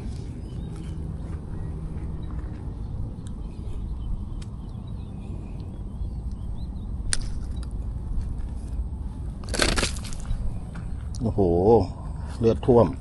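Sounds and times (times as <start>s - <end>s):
sharp clicks: 4.4s - 4.8s.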